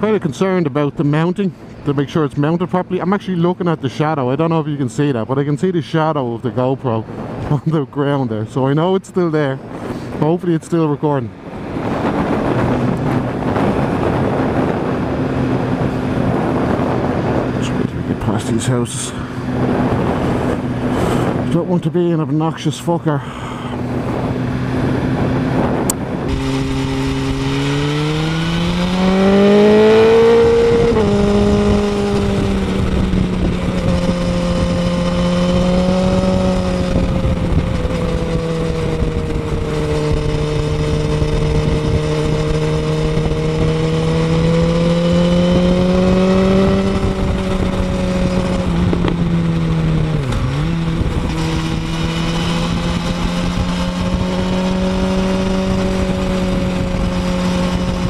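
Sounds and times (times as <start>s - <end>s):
motorcycle engine revving: 11.5s - 21.6s, 23.8s - 58.0s.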